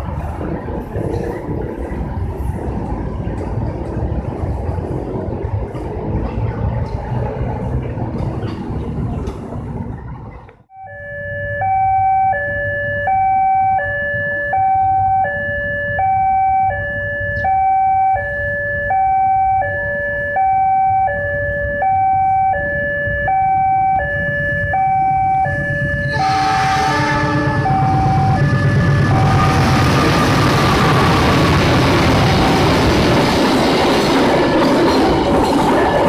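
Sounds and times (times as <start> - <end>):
two-tone warning siren: 10.7 - 33.2
loud rushing noise: 27.2 - 36.0.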